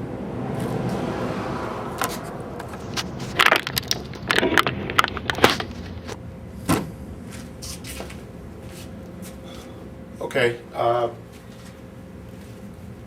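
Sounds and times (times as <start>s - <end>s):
sharp knocks and clatters: 2.0s - 6.9s.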